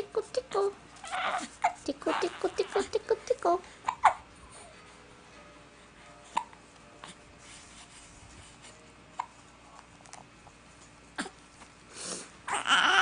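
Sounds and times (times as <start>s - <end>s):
baby crying: 1.0s - 3.0s, 12.5s - 13.0s
baby hiccuping: 3.8s - 4.2s.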